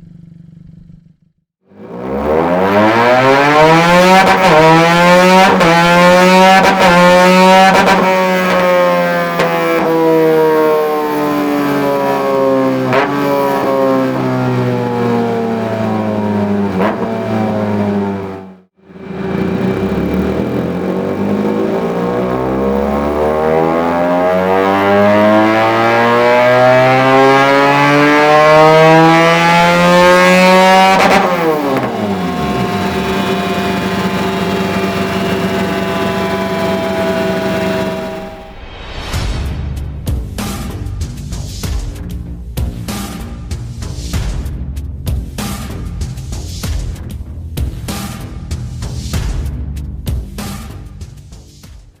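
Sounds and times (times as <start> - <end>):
motorcycle engine revving: 0.0 - 38.8.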